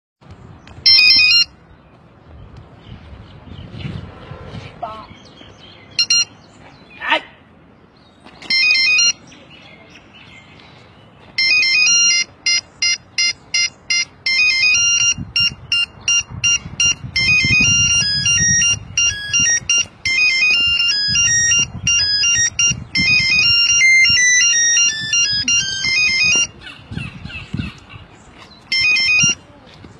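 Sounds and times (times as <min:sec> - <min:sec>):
mobile phone ringtone beeps: 0:00.8 - 0:01.6, 0:06.0 - 0:06.3, 0:08.4 - 0:09.2, 0:11.4 - 0:26.6, 0:28.7 - 0:29.4.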